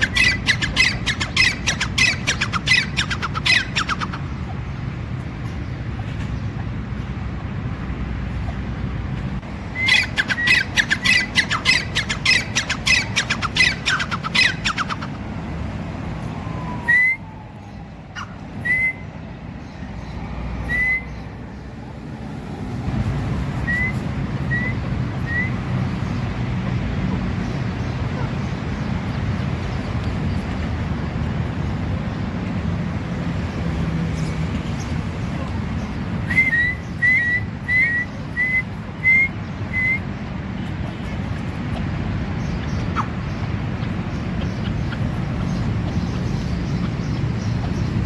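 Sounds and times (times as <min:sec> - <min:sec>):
francolin calling: 0:09.8 - 0:15.1.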